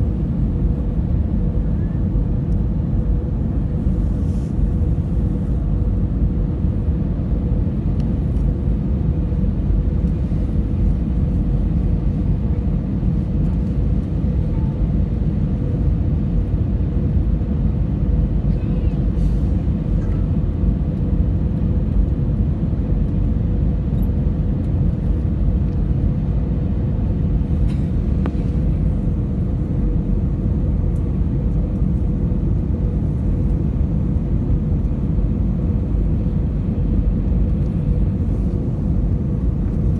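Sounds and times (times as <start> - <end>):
airliner engine and airflow roar: 0.0 - 39.9.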